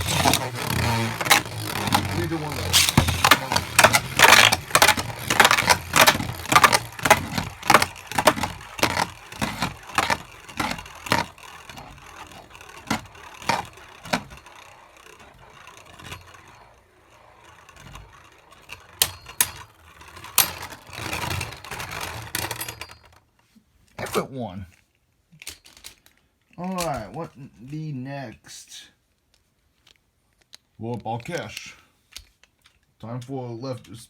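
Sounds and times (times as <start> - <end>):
spinning tops clashing: 0.0 - 22.6.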